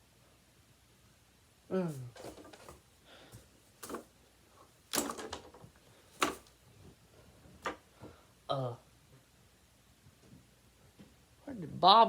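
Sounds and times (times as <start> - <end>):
small hard objects knocking: 4.9 - 6.5.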